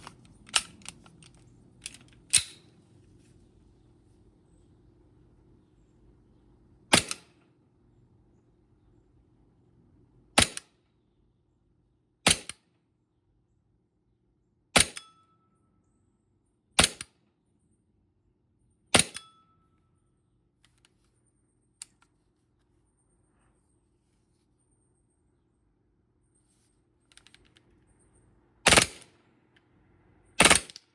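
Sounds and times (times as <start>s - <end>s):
airsoft pistol shots: 12.3s - 12.6s, 18.9s - 19.2s.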